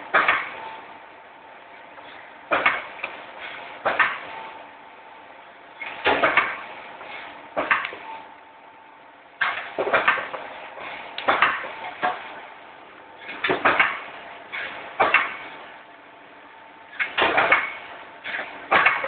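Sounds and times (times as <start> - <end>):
machine metal knocks and clicks: 2.5 - 3.2, 9.4 - 10.5, 11.2 - 12.3, 13.2 - 15.4, 17.0 - 19.0.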